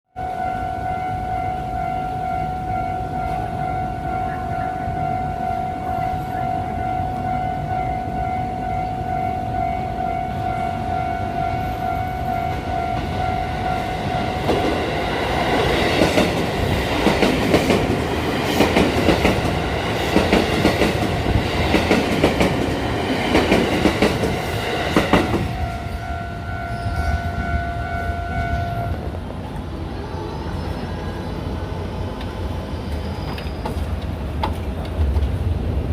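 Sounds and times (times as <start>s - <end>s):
level crossing warning signal ringing: 0.2s - 29.2s
train wheels clacking over rail joints: 15.6s - 25.7s, 33.1s - 35.5s.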